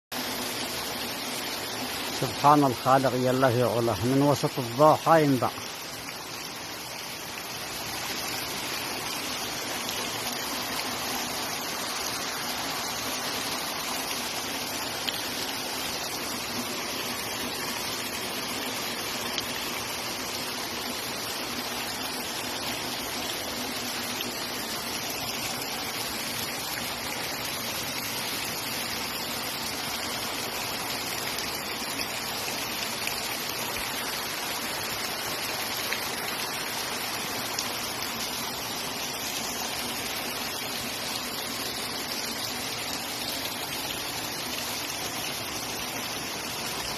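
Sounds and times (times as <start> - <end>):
spring water gushing over rocks: 0.1 - 46.9.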